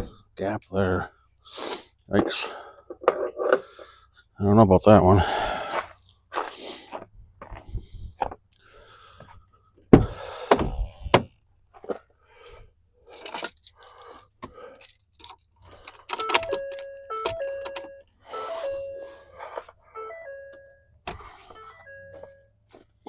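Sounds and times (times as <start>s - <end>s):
keys jangling: 13.2s - 19.2s
dashboard warning chime: 16.1s - 22.6s.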